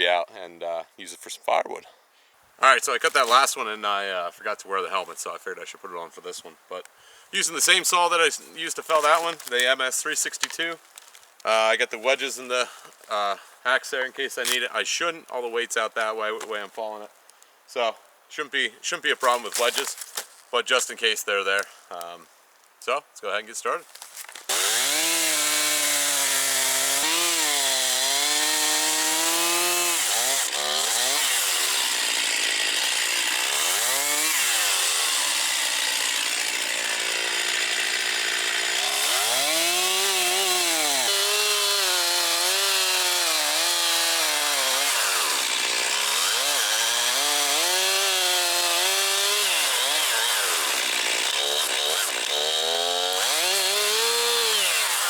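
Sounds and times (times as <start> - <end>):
chainsaw cutting wood: 3.0 - 3.6, 8.9 - 9.8, 19.2 - 20.3, 24.3 - 55.0.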